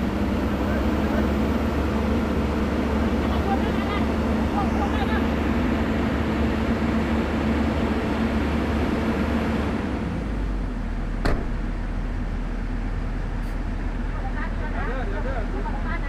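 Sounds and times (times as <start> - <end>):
heavy diesel engine running: 0.0 - 16.0
sharp knock: 11.2 - 11.7.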